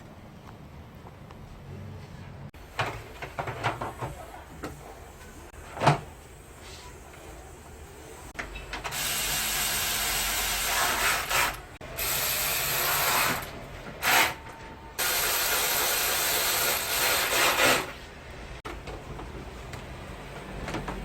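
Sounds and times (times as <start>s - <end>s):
ratcheting power tool running: 15.0s - 17.9s.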